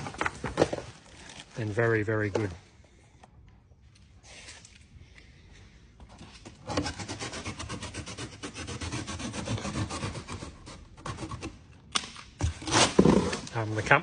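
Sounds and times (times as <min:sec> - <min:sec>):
cardboard scraping and rubbing: 0:12.5 - 0:14.0.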